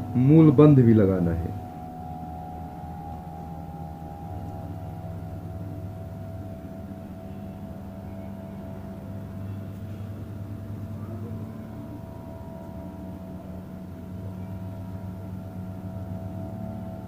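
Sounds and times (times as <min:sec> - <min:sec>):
faint higher tone: 0:00.0 - 0:17.0
steady low hum: 0:00.0 - 0:17.0.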